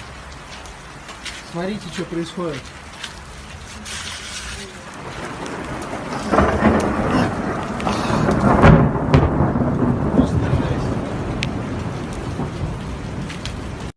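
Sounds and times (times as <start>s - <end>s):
heavy rain: 0.0s - 13.9s
thunder clap and rumble: 4.9s - 13.9s.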